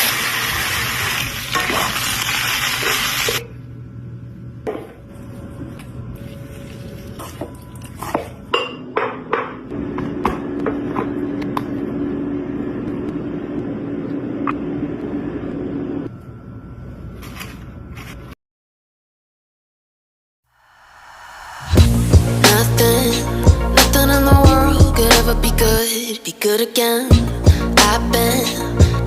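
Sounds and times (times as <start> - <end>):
steady hum: 3.4 - 17.9
utensils clinking on dishes: 7.2 - 9.4.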